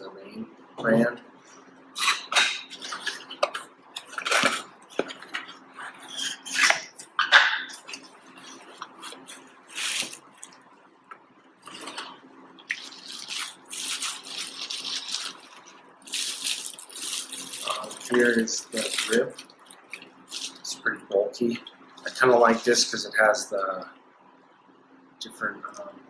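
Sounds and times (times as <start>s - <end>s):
packaging rustling and crinkling: 2.0s - 5.6s, 7.7s - 10.6s, 12.7s - 20.7s.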